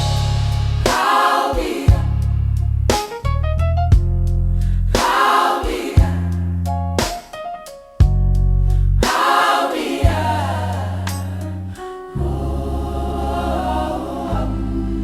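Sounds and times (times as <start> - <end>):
held bass notes: 0.0 - 0.9, 1.9 - 5.0, 10.0 - 15.0
choir singing in harmony: 0.8 - 2.3, 5.0 - 6.5, 9.0 - 15.0.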